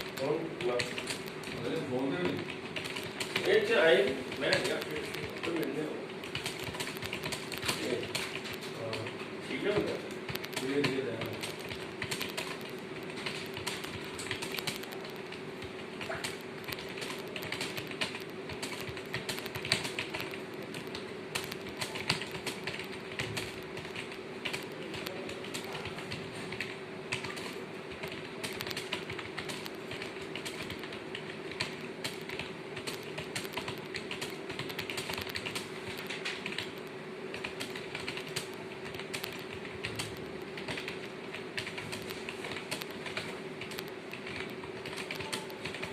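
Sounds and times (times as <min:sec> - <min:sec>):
keyboard typing clatter: 0:00.0 - 0:45.9.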